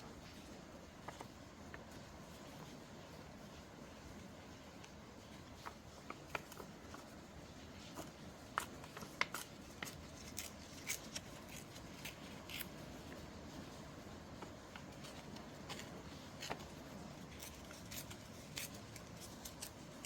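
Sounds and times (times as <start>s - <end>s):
faint rain hiss: 0.0s - 20.0s
paper rustling and tapping: 5.6s - 7.1s.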